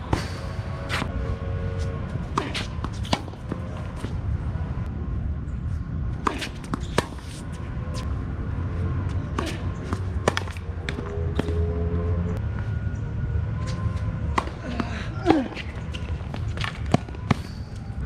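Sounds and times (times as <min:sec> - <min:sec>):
tennis ball hit by rackets: 0:02.3 - 0:04.1, 0:06.2 - 0:07.4, 0:09.3 - 0:11.6
tennis ball bouncing on court: 0:06.2 - 0:07.4, 0:09.4 - 0:11.6.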